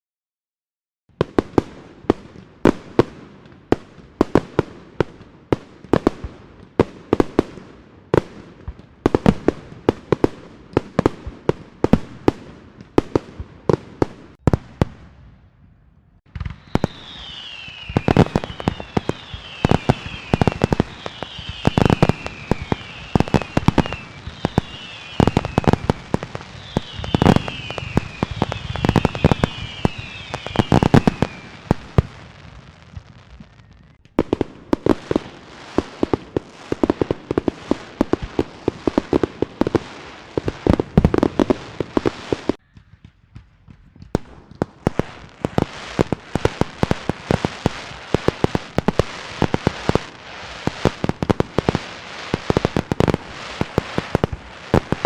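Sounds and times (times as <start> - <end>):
fireworks crackling: 1.1 - 15.5, 16.3 - 55.0
firecrackers banging: 16.2 - 55.0
fireworks whistling: 16.3 - 42.8, 43.5 - 55.0.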